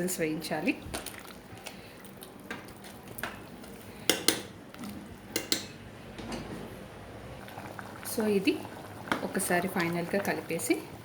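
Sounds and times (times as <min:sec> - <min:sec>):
metal spoon clinking against pot: 0:05.3 - 0:05.8.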